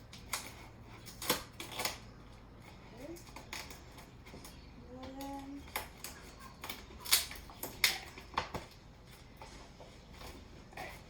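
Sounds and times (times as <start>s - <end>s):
duct tape being pulled and wrapped: 0.0s - 4.6s.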